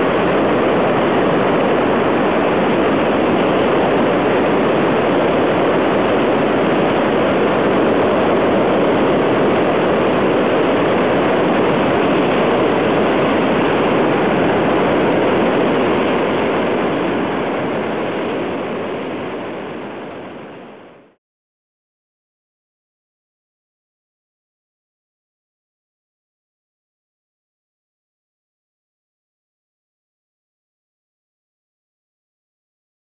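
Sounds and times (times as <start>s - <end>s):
river rushing white water: 0.0s - 21.2s.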